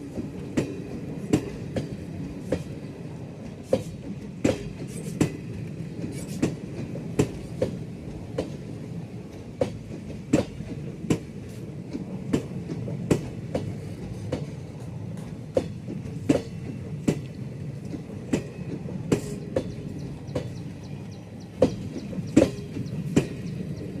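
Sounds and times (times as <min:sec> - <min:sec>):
train running rumble: 0:00.0 - 0:24.0
train wheels clattering: 0:00.0 - 0:24.0.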